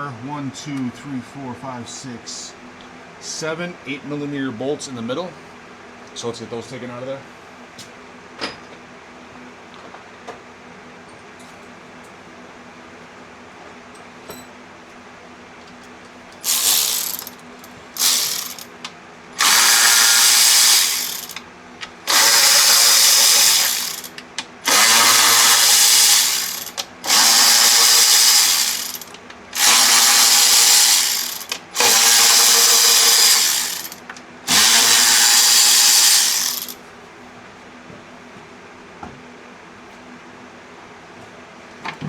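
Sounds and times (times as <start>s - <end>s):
power tool bursts: 16.4s - 18.7s, 19.4s - 21.4s, 22.0s - 36.8s.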